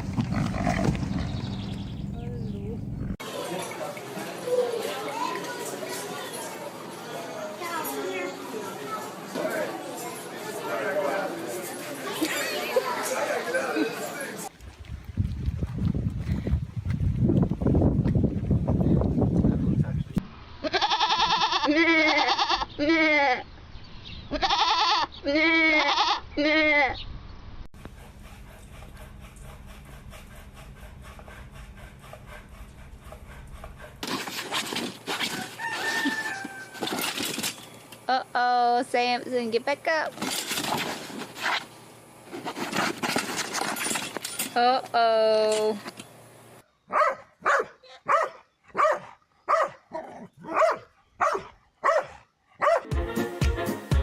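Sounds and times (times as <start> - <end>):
goat bleating: 20.6 - 23.4, 24.3 - 27.0
rooster crowing: 35.3 - 37.1
dog barking: 46.9 - 52.9.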